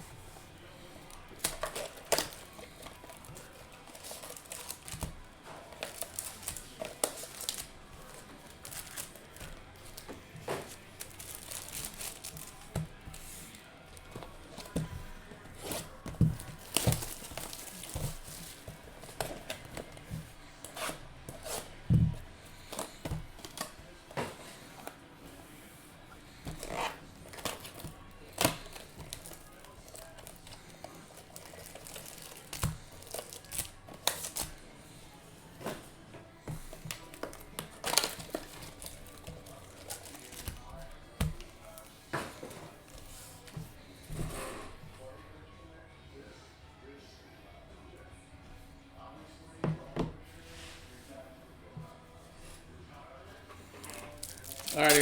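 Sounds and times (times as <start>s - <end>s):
foil wrappers crinkling: 0.0s - 25.0s, 26.2s - 43.5s, 53.6s - 55.0s
foil tearing: 1.0s - 14.8s, 15.5s - 21.8s, 26.5s - 34.6s, 36.6s - 41.9s, 53.8s - 55.0s.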